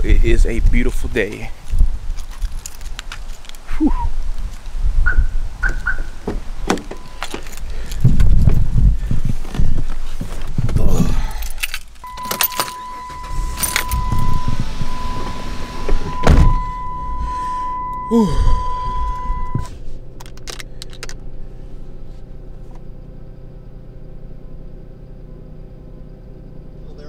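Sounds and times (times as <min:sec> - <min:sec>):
keys jangling: 0:02.2 - 0:03.6, 0:06.7 - 0:08.1, 0:11.3 - 0:14.4, 0:20.2 - 0:21.2
car door thud: 0:05.1 - 0:07.5, 0:12.1 - 0:17.9
car engine starting and idling: 0:05.1 - 0:27.0.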